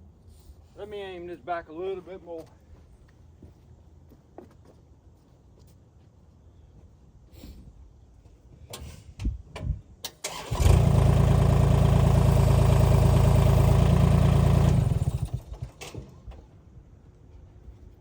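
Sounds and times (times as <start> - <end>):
engine revving at high speed: 10.5 - 15.6.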